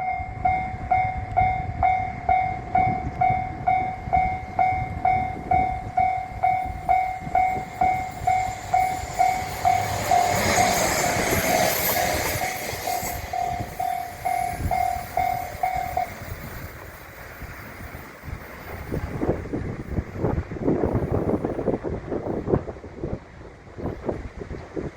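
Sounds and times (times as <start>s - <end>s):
level crossing bell dinging: 0.0s - 10.8s, 12.4s - 16.2s
train passing: 0.0s - 24.9s.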